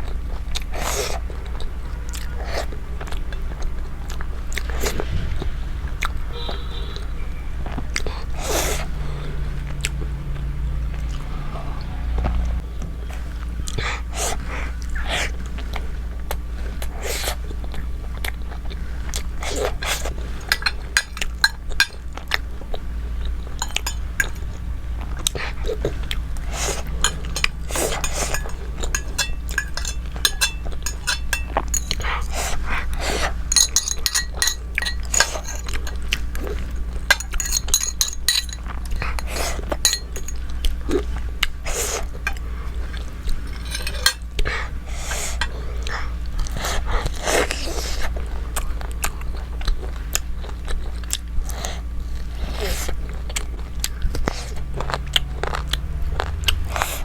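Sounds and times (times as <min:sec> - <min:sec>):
steady low hum: 0:00.0 - 0:55.7
person chewing: 0:13.6 - 0:51.8, 0:52.4 - 0:57.0
cutlery clinking on a plate: 0:19.8 - 0:22.0, 0:23.6 - 0:24.6, 0:26.6 - 0:32.2, 0:33.1 - 0:36.4, 0:37.0 - 0:40.4, 0:43.6 - 0:44.3.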